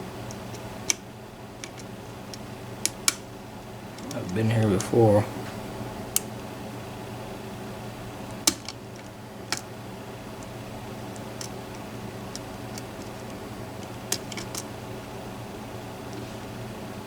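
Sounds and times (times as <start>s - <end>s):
steady low hum: 0.0s - 17.0s
lock pick clicking in lock: 1.6s - 3.2s, 14.1s - 14.7s.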